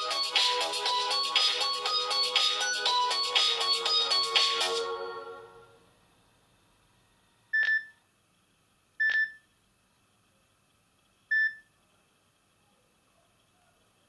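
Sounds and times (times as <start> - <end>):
mobile phone key beeps: 7.6 - 8.0, 9.0 - 9.4, 11.3 - 11.6.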